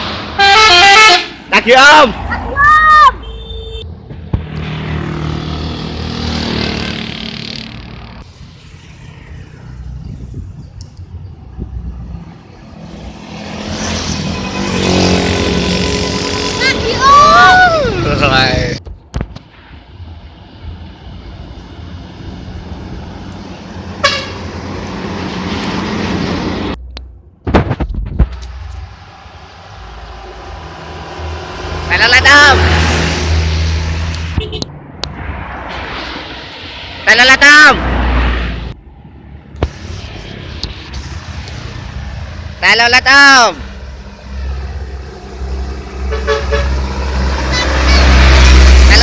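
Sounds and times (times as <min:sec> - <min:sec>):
vehicle driving past: 0:04.4 - 0:10.3, 0:11.8 - 0:17.0, 0:28.4 - 0:37.1, 0:43.6 - 0:49.0.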